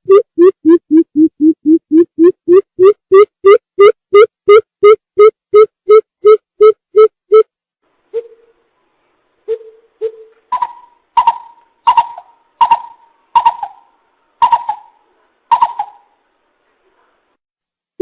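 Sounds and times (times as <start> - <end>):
bird hooting: 9.5 - 16.1.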